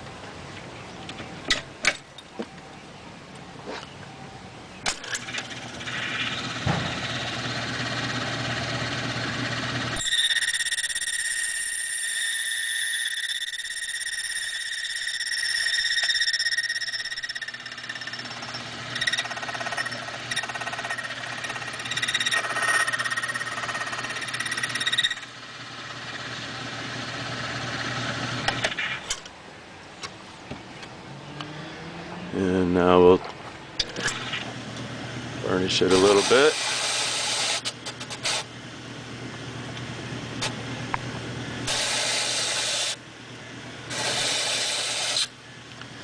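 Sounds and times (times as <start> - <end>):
low machine hum: 0.0 - 44.2, 45.3 - 46.0
key cutting machine whine: 5.0 - 28.7, 33.8 - 38.4
cutter pulsing along key: 5.1 - 26.2.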